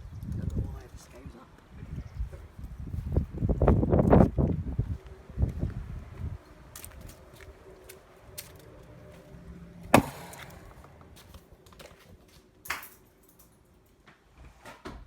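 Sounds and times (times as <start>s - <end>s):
sharp knocks: 9.9s - 10.9s.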